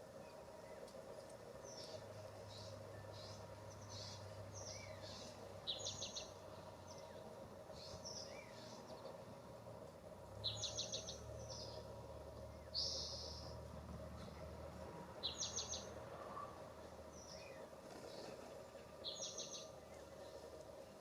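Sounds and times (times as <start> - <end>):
songbirds chirping: 0.0 - 21.0
steady low hum: 0.0 - 21.0.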